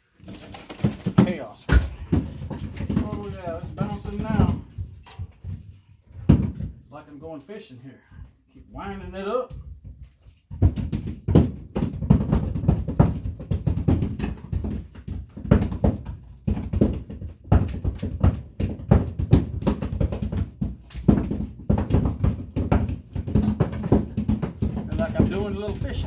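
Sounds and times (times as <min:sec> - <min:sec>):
ballast knocking and rattling: 0:00.2 - 0:06.8, 0:09.6 - 0:26.0.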